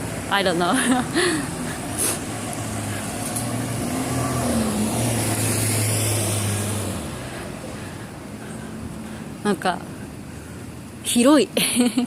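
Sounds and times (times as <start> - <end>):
car engine hum: 0.0 - 12.0
road noise: 0.0 - 12.0.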